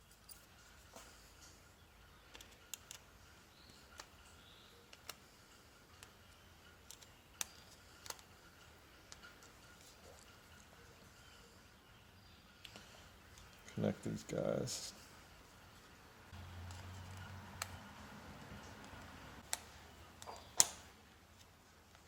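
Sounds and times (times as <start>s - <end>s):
small clicks and taps of wires: 2.3s - 4.3s, 4.9s - 5.3s, 6.8s - 8.4s.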